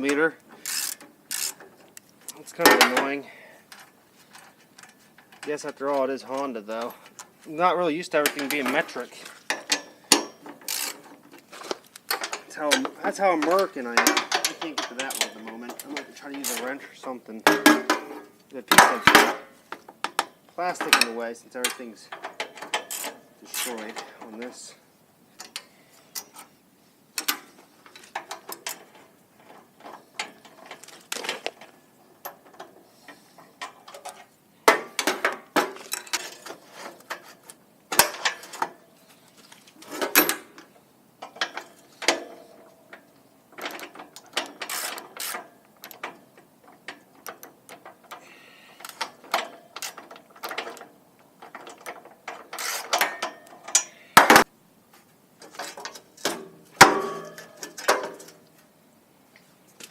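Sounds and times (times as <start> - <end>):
ratchet clicking: 0.6 - 1.6, 10.7 - 11.0
metal clanks and knocks: 2.5 - 5.6, 8.1 - 16.8, 17.4 - 24.7, 33.4 - 38.8, 39.8 - 54.5, 55.4 - 58.4.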